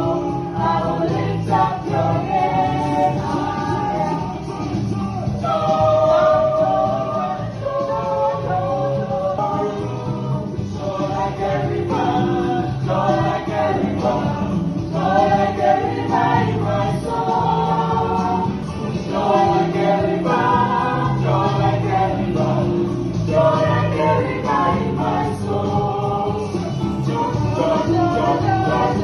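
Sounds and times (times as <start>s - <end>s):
choir singing with accompaniment: 0.0s - 29.0s.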